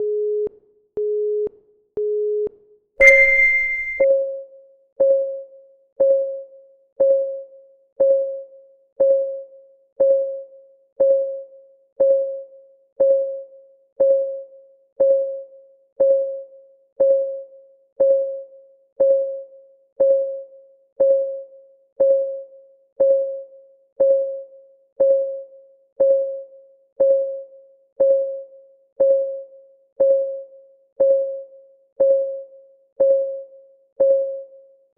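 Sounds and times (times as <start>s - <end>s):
bright chime: 3.0s - 4.1s
short electronic beeps: 3.0s - 4.1s
timer ticking with ring: 3.0s - 4.1s.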